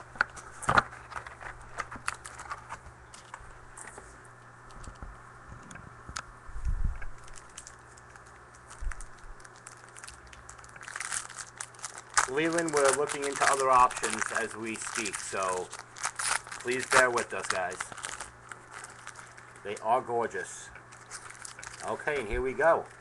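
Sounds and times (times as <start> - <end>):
steady low hum: 0.0 - 23.0
cards clicking and rustling: 9.5 - 19.9.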